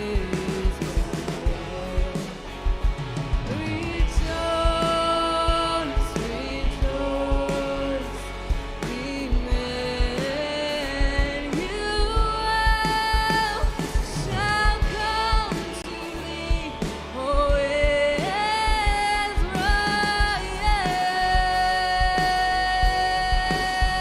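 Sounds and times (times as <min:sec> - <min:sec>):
live band playing: 0:00.0 - 0:24.0
person singing: 0:00.0 - 0:24.0
steady drum beat: 0:00.0 - 0:24.0.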